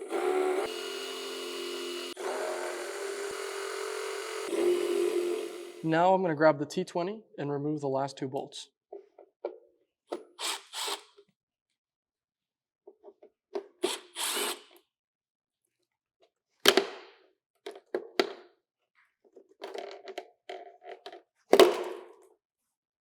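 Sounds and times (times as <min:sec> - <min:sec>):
power drill spurts: 0:00.0 - 0:05.9, 0:10.4 - 0:11.1, 0:13.8 - 0:14.8.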